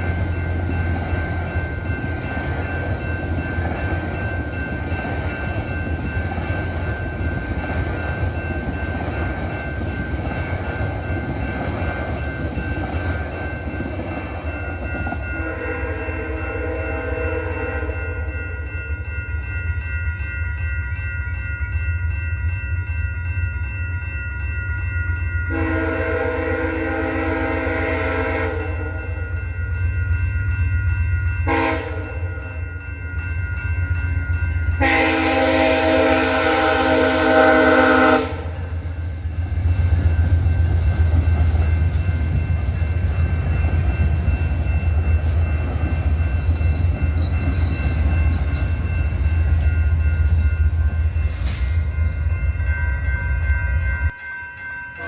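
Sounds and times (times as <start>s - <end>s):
train wheels rumbling on rails: 0.0s - 55.0s
train horn blasts: 15.2s - 18.2s, 25.5s - 29.2s, 31.4s - 32.3s, 34.8s - 38.7s.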